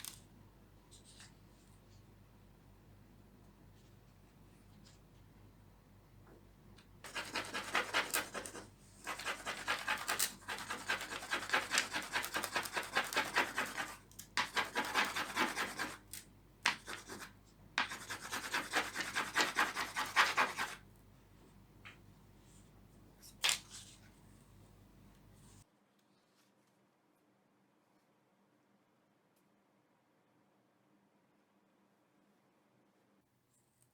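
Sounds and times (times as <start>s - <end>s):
scratchy rubbing on wooden tray: 7.1s - 16.0s, 16.9s - 20.8s.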